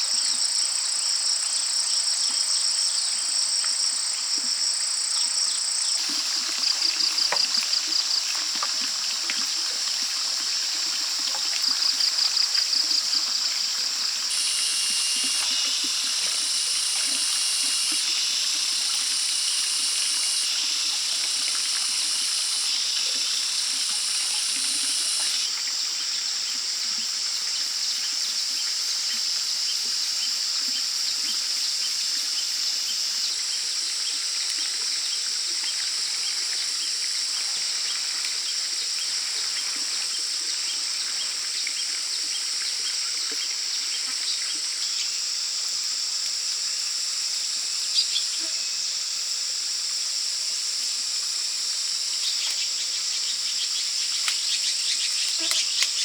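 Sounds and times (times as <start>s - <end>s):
high-pitched insect drone: 11.4s - 56.0s.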